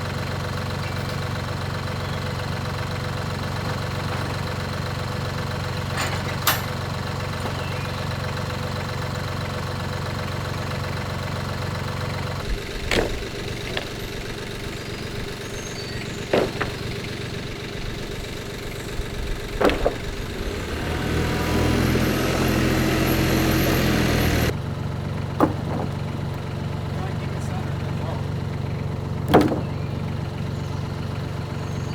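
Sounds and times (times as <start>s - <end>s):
engine running: 0.0s - 31.9s
sharp knocks or clanks: 5.8s - 7.7s, 12.8s - 15.2s, 16.2s - 17.4s, 19.5s - 24.5s, 25.4s - 26.4s, 29.2s - 29.9s.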